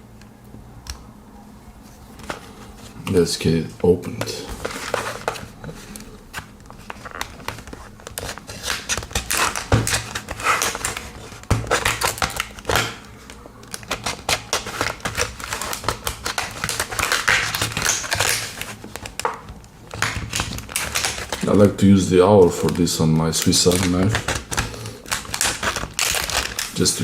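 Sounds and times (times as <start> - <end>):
stiff plastic clicking and snapping: 22.5 - 26.8.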